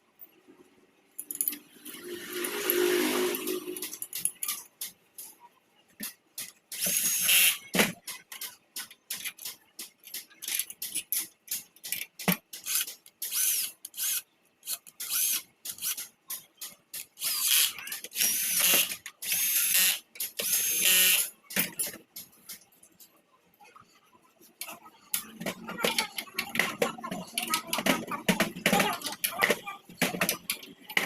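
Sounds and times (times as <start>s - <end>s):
sharp clicks of tools: 1.2s - 5.4s, 6.0s - 23.1s
power drill motor whine: 6.8s - 7.6s, 17.2s - 21.3s.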